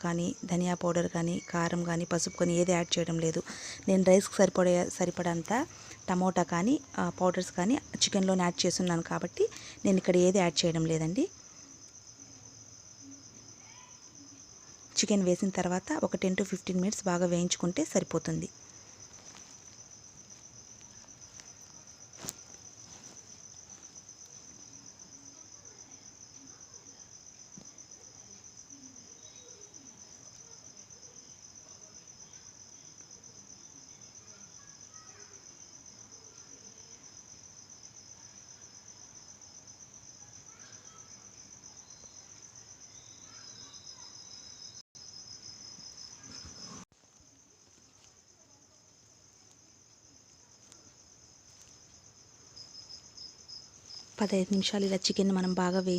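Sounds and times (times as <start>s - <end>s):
insect trilling: 0.0s - 27.9s.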